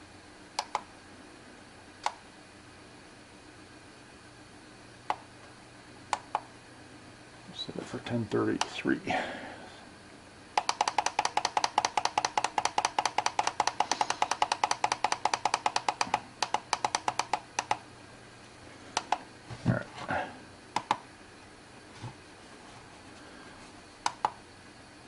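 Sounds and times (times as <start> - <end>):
single clicks: 0.6 - 0.9, 2.0 - 2.2, 20.8 - 21.0, 24.0 - 24.4
rapid clicking beeps: 10.6 - 17.8.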